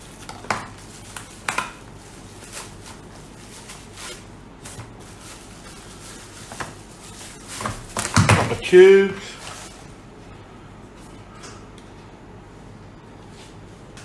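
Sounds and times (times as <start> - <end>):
wrapper crinkling and rustling: 0.0 - 10.0.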